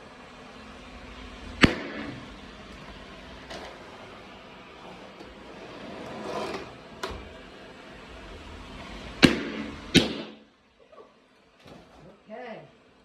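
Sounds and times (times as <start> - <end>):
robot vacuum motor hum: 0.0 - 10.0.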